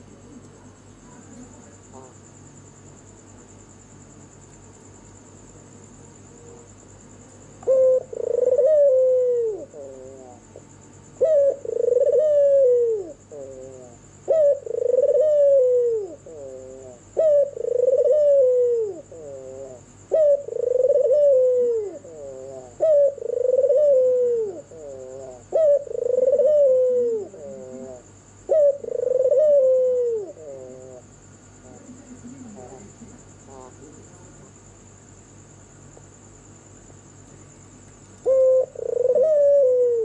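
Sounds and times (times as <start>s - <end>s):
dove cooing: 7.6s - 33.7s, 38.2s - 40.0s.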